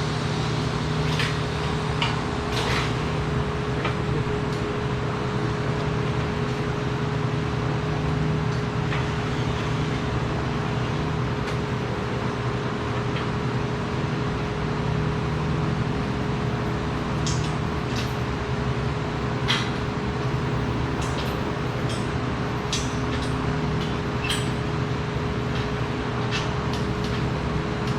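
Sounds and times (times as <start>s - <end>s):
machinery humming: 0.0s - 5.6s, 15.6s - 27.9s.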